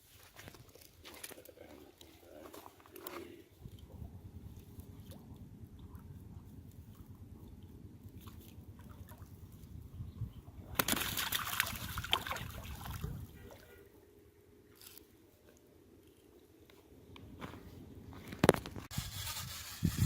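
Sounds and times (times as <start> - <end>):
water splashing and sloshing: 0.0 - 3.9, 4.5 - 14.0.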